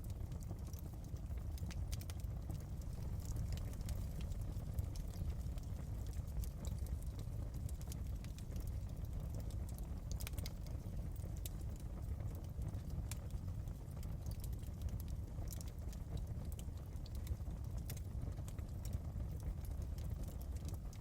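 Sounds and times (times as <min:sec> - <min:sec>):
fire crackling and popping: 0:00.0 - 0:21.0
low rumble: 0:02.7 - 0:07.7.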